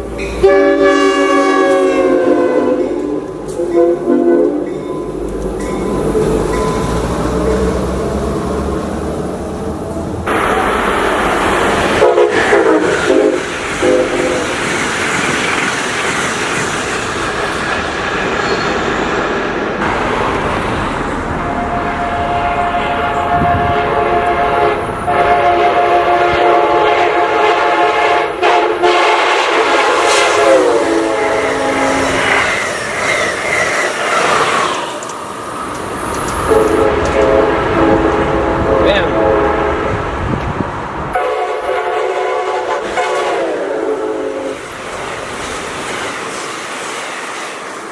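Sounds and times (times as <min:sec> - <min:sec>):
train rushing and clattering on rails: 0:00.0 - 0:47.9
train air horn blasts: 0:00.4 - 0:04.7, 0:11.8 - 0:14.5, 0:21.4 - 0:32.5, 0:36.4 - 0:40.0, 0:41.1 - 0:44.6.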